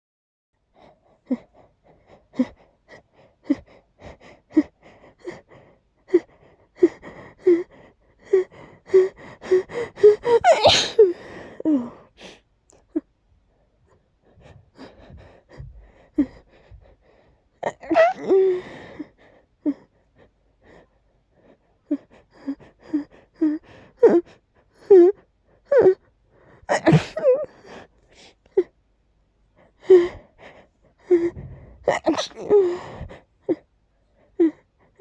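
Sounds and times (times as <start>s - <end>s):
person sneezing: 10.3s - 11.2s, 26.7s - 27.4s, 31.9s - 32.9s.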